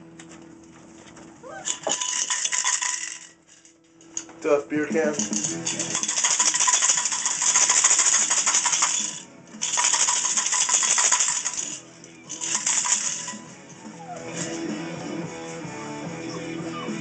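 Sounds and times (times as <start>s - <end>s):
coins rattling in a metal can: 1.6s - 3.8s, 4.9s - 13.5s.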